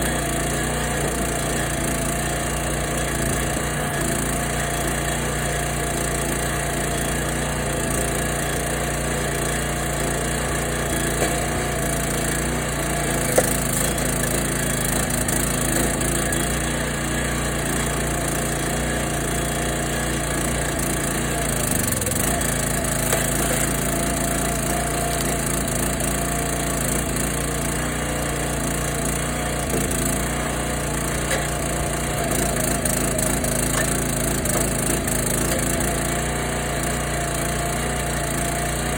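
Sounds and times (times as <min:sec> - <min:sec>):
small engine running: 0:00.0 - 0:38.9
wood splitting cracks: 0:11.0 - 0:16.6, 0:21.8 - 0:24.4.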